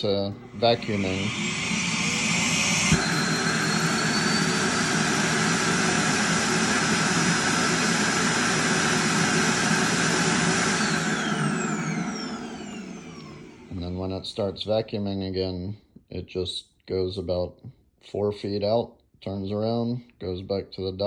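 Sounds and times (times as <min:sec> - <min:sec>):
loud suction motor whoosh: 0:00.5 - 0:13.9.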